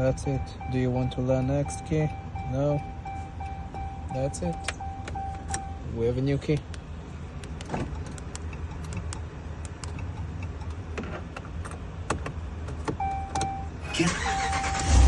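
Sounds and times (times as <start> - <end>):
truck engine cranking and starting: 13.8 - 15.0.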